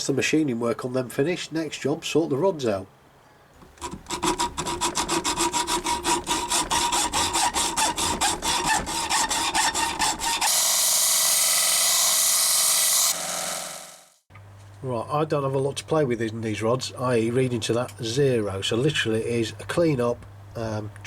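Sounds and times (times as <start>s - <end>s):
hand tool scraping metal rod: 3.6s - 10.6s
loud hiss: 10.6s - 14.1s.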